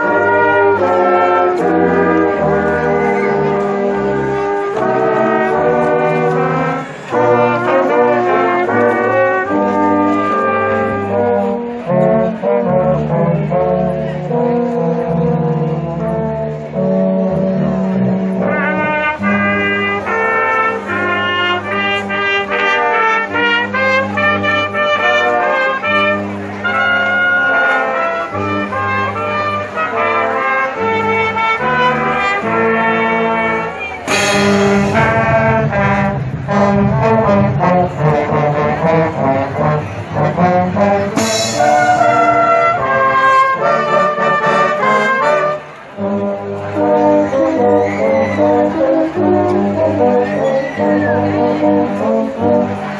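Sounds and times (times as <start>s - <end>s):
marching band playing: 0.0s - 52.9s
loud percussion crashes: 34.1s - 38.1s.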